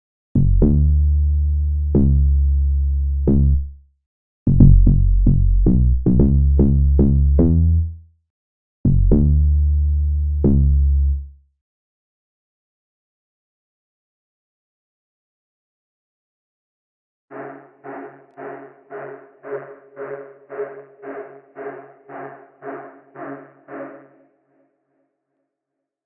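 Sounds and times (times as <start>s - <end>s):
electronic bass phrases: 0.4s - 3.7s, 4.5s - 8.0s, 8.9s - 11.2s.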